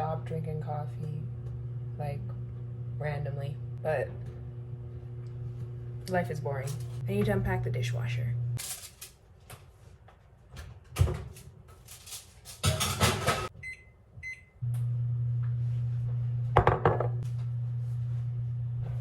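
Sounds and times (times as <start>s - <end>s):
microwave oven humming: 0.0s - 8.7s, 12.7s - 19.0s
dishes clattering: 12.6s - 13.5s.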